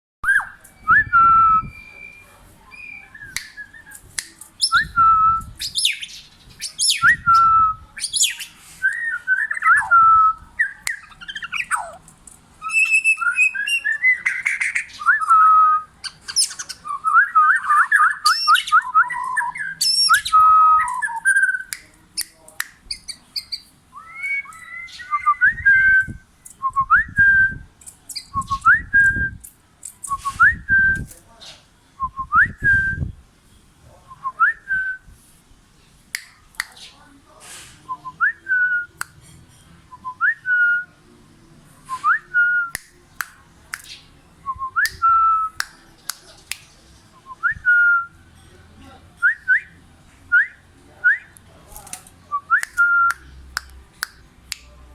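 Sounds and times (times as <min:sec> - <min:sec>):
bird singing whistled phrases: 0:00.2 - 0:04.0, 0:04.6 - 0:12.0, 0:12.6 - 0:21.7, 0:22.9 - 0:27.6.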